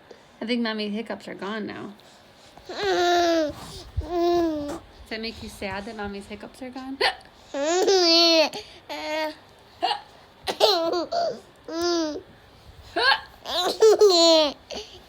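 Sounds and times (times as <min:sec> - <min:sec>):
baby laughing and squealing: 0:02.7 - 0:04.8, 0:07.5 - 0:12.2, 0:13.0 - 0:15.0.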